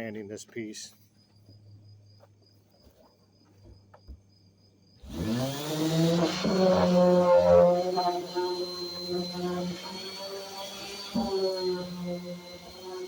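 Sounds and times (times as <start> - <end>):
cricket chirping: 0.0 - 5.0
electric sander motor whine: 5.0 - 13.0.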